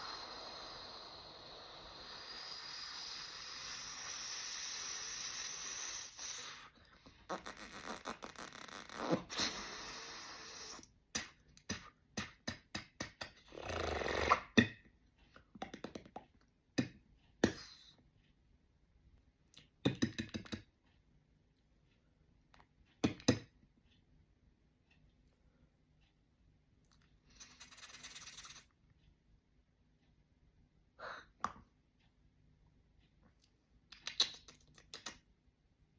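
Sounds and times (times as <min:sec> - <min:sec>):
beatboxer mouth sound effects: 0:07.3 - 0:14.8, 0:15.6 - 0:17.9, 0:19.8 - 0:20.7, 0:23.0 - 0:23.5, 0:27.3 - 0:28.7, 0:33.9 - 0:35.2.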